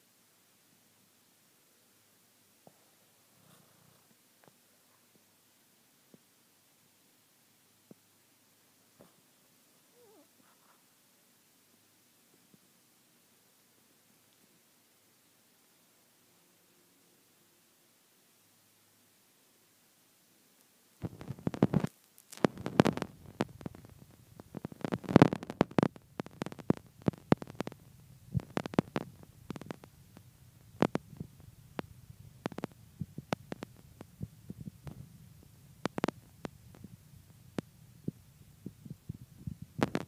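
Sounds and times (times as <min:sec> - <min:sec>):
dog snoring: 0:09.9 - 0:10.5.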